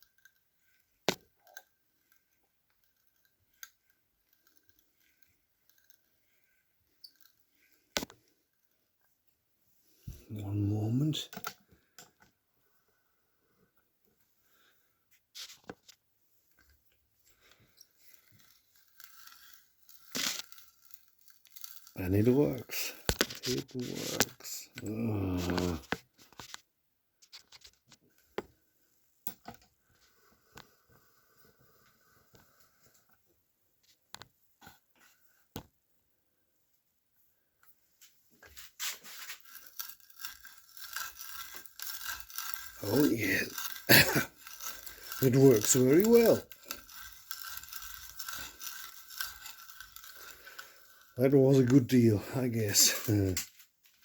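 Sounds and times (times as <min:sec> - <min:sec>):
wood scraping on wood: 0:17.4 - 0:26.0, 0:38.4 - 0:53.5.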